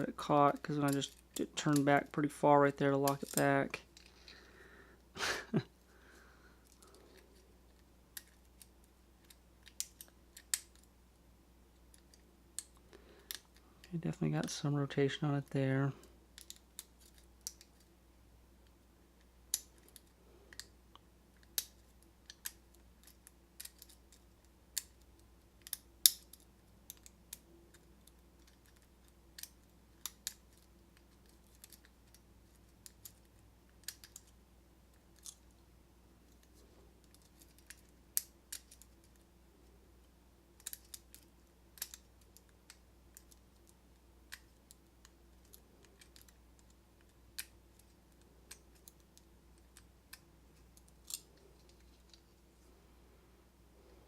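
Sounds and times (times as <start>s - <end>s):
metallic lock picking clicks: 33.8s - 34.3s, 41.8s - 43.4s.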